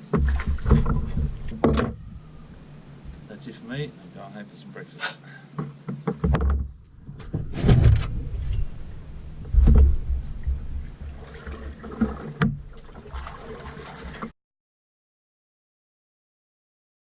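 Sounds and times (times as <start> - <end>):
knocks against canoe hull: 0.0 - 2.0, 5.6 - 8.2, 9.5 - 10.8
low rumbles on microphone: 0.0 - 3.3, 6.4 - 12.8.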